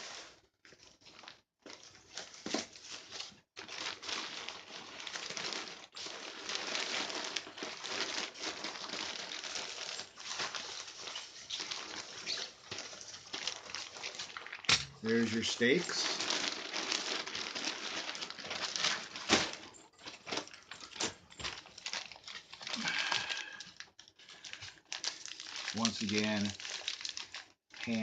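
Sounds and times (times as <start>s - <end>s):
packaging crinkling and rustling: 0.1s - 28.0s.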